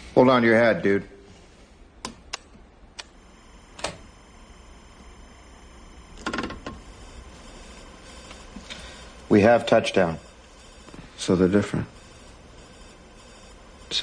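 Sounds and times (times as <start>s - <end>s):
faint steady hum: 0.0s - 14.0s
high equipment whine: 3.0s - 14.0s
clicks of equipment controls: 3.8s - 4.0s.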